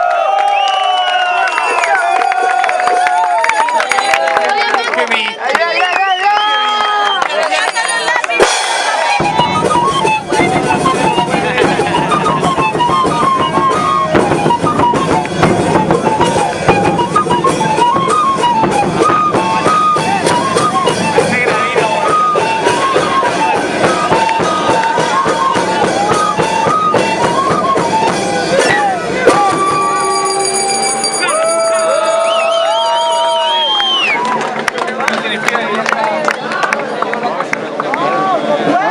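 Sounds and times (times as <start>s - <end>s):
melody over guitar and drums: 8.4s - 32.3s.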